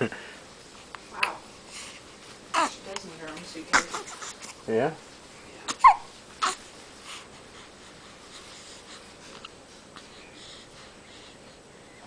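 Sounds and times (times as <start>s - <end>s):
soft rustling: 1.6s - 11.0s
baby hiccuping: 3.7s - 4.2s, 5.7s - 6.6s
baby breathing: 6.4s - 12.0s.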